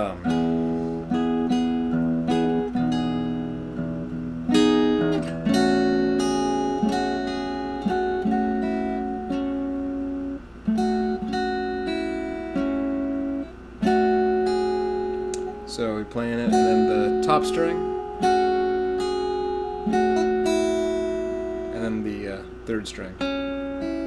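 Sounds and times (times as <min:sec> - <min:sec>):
acoustic guitar strumming chords: 0:00.0 - 0:24.0.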